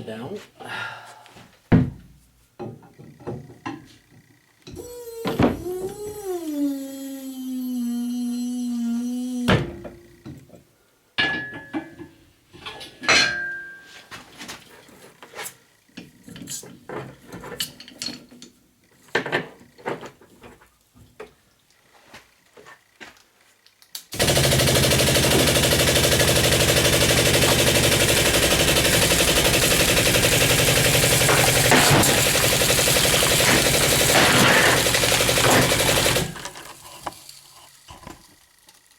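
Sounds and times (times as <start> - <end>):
machine rattling: 24.2 - 37.4.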